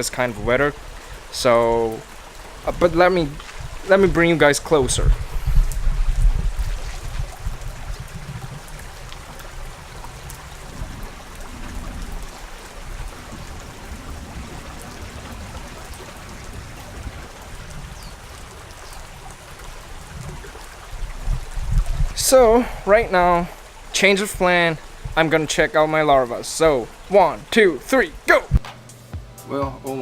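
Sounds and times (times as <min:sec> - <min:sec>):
steady rain falling: 0:00.0 - 0:30.0
low microphone rumble: 0:04.8 - 0:18.0.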